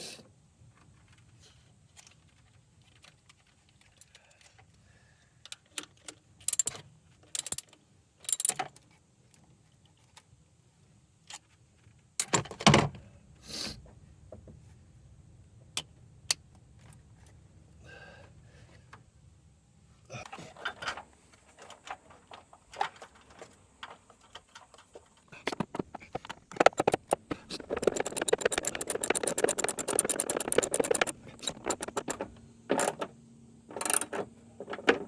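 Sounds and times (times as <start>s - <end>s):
metal tools clinking: 22.8s - 33.0s.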